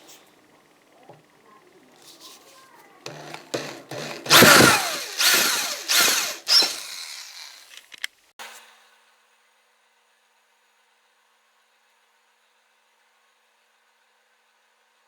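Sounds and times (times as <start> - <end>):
power drill drilling metal pipe: 3.1 - 7.8.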